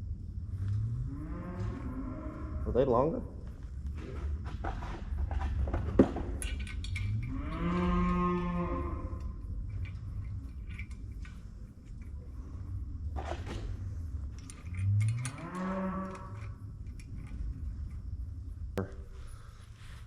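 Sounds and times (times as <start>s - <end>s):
steady low rumble: 0.0s - 5.7s, 9.0s - 15.1s, 16.3s - 20.0s
cow mooing: 1.0s - 2.8s, 7.3s - 9.4s, 15.2s - 16.4s.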